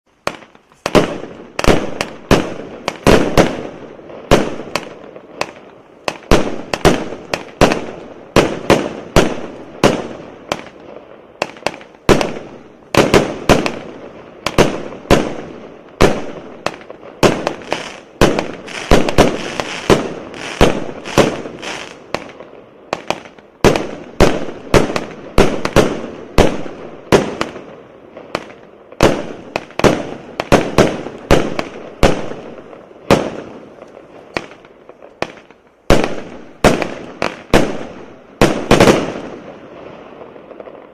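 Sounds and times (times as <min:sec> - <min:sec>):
firework cake bangs: 0:11.4 - 0:22.4.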